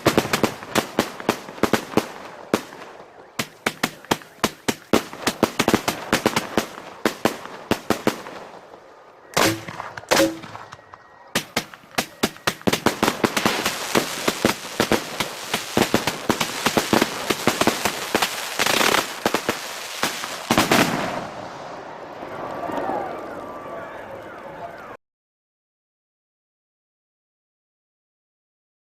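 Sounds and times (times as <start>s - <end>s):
firework pops and crackles: 0.0s - 8.6s, 9.4s - 21.7s
loud firework bursts: 0.0s - 22.5s.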